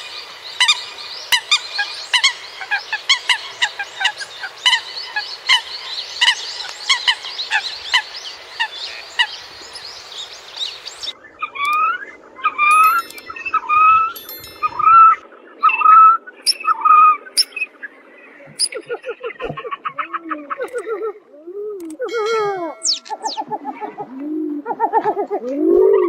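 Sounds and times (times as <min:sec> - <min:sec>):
background hiss: 0:00.0 - 0:11.3.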